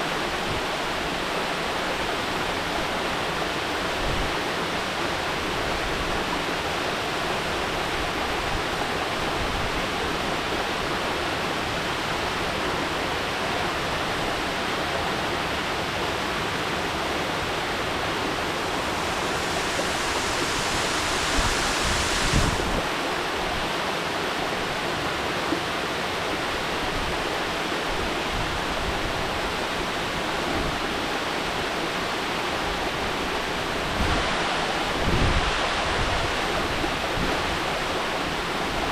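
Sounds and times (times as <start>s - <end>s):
waterfall rushing: 10.5s - 27.8s.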